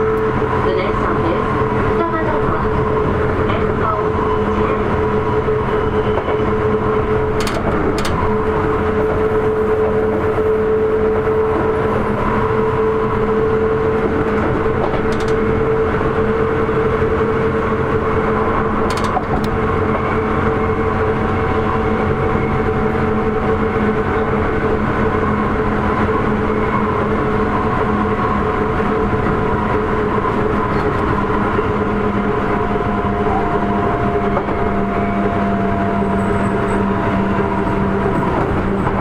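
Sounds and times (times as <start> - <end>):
electric train motor whine: 0.0 - 39.0
train rail and running noise: 0.0 - 39.0.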